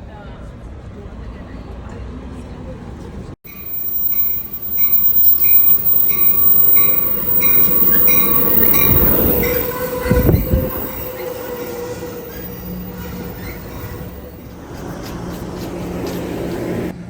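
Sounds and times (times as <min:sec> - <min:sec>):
train rumbling on rails: 0:03.1 - 0:17.0
wheels squealing on rail: 0:03.5 - 0:17.0.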